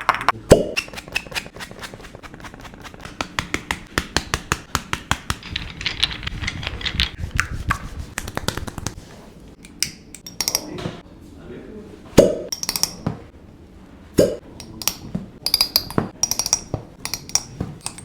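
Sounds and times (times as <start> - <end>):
sharp clicks and taps: 0.0 - 9.0, 14.2 - 18.0.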